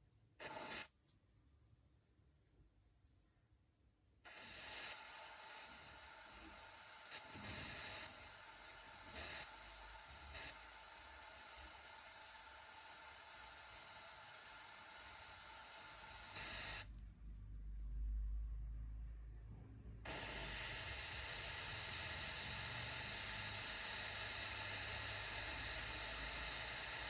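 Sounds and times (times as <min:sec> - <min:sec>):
steady hiss: 0:00.4 - 0:00.9, 0:04.3 - 0:17.0, 0:20.0 - 0:27.0.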